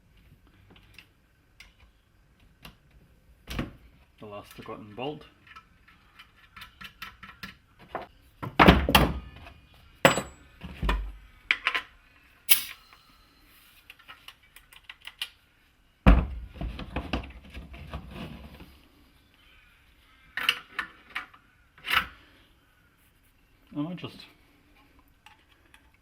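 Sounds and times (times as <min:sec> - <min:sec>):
metal parts and tools clattering: 0:10.1 - 0:10.4, 0:12.5 - 0:12.9.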